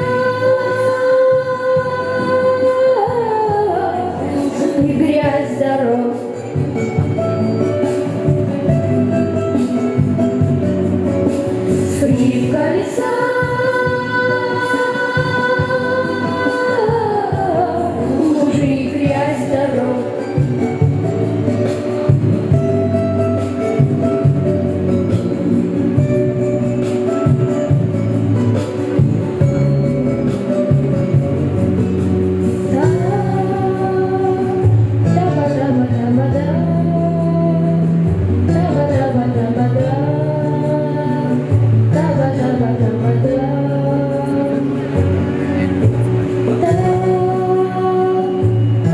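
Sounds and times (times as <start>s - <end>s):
boy singing: 0.0s - 6.4s, 11.9s - 20.4s, 32.6s - 45.8s, 46.5s - 48.9s
backing track with a beat: 0.0s - 48.9s.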